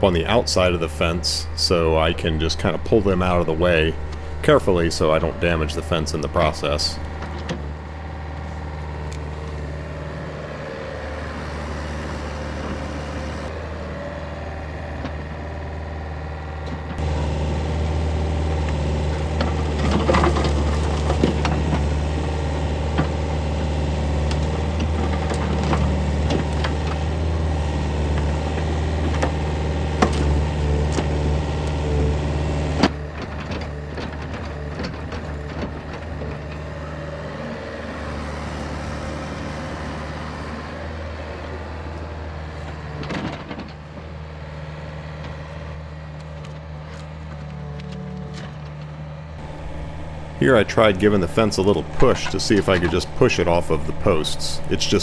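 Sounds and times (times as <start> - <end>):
excavator diesel engine running: 0.0 - 7.4, 17.0 - 33.1, 49.4 - 55.0.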